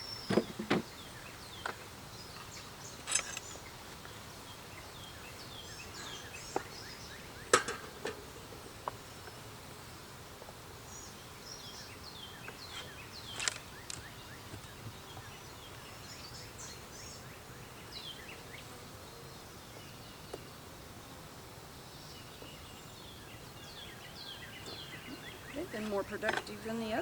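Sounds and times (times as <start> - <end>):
small birds chirping: 0.0 - 20.7, 21.8 - 27.0
sharp click: 13.4 - 14.0
bees humming: 23.0 - 27.0.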